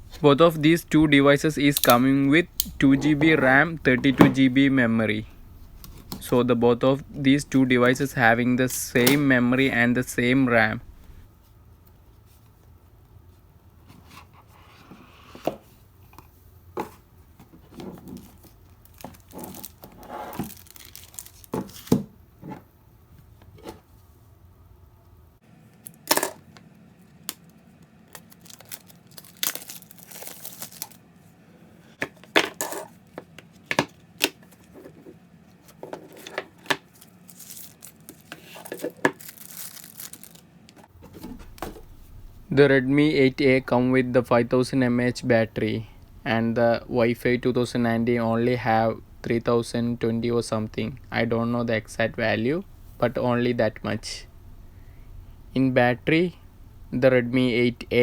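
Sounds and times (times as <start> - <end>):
cardboard and plastic rustling: 16.8 - 24.0, 25.8 - 31.0, 31.9 - 42.4.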